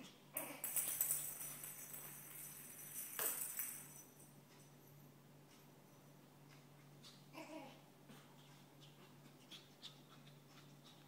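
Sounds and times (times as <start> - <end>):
jingling rattling toy: 0.4 - 4.8.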